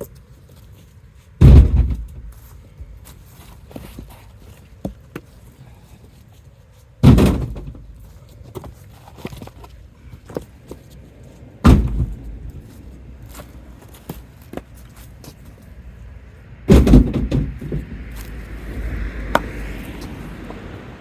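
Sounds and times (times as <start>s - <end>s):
wood handling knocks and clicks: 1.4s - 2.4s, 11.6s - 12.6s, 16.7s - 18.4s
logs thudding into truck bed: 1.4s - 2.5s, 7.0s - 8.1s, 11.6s - 12.6s, 16.7s - 18.2s.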